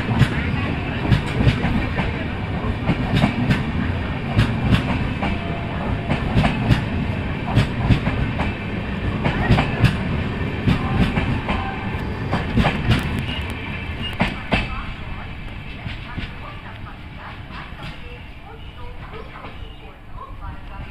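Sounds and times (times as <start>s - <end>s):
train wheels clattering over joints: 0.0s - 14.8s
train rumble: 0.0s - 20.9s.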